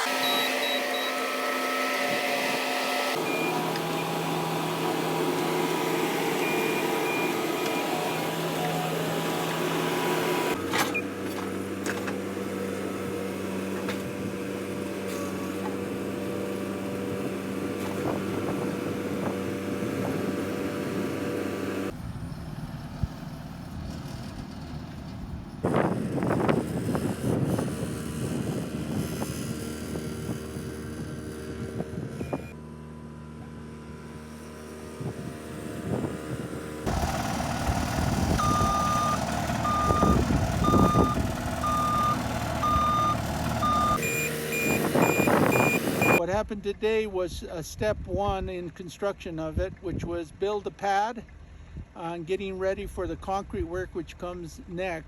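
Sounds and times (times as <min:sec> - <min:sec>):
reversing alarm beeping: 0:00.0 - 0:09.7, 0:36.9 - 0:46.2
skid steer engine running: 0:00.0 - 0:46.3.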